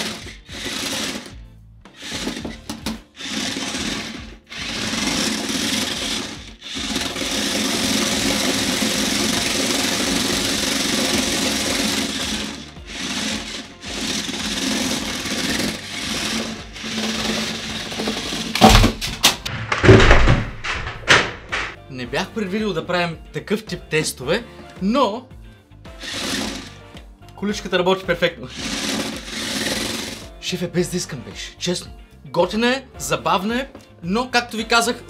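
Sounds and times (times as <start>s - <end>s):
toy car motors whirring: 0.0s - 1.3s, 2.0s - 18.6s, 26.0s - 26.8s, 28.5s - 30.3s
loud knocks: 18.6s - 21.8s.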